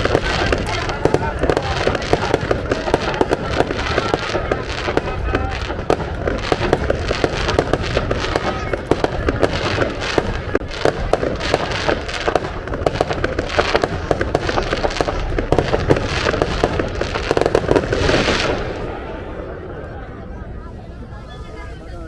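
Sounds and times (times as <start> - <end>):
fireworks bangs and crackles: 0.0 - 22.0.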